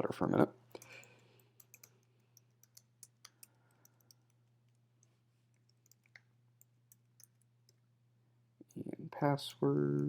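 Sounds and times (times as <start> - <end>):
low steady hum: 0.0 - 10.0
keyboard and mouse clicks: 0.8 - 7.8.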